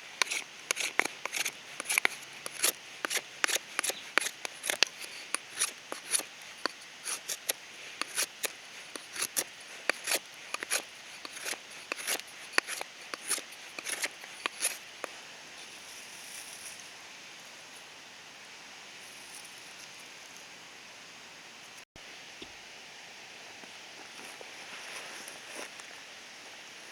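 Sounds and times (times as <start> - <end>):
sharp clicks and scrapes: 0.2 - 15.1.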